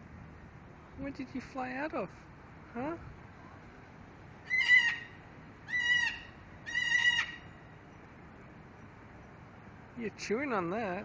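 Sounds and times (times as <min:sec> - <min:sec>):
parrot calling: 0:04.4 - 0:07.5.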